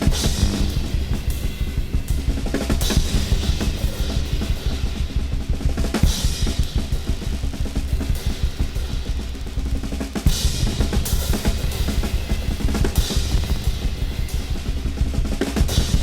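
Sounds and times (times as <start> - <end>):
fast drum kit playing: 0.0 - 16.0
sustained low bass: 0.2 - 2.1.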